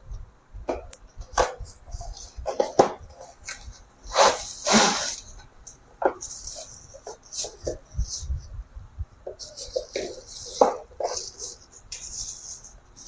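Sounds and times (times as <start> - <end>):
cardboard and plastic crinkling: 0.7 - 8.3.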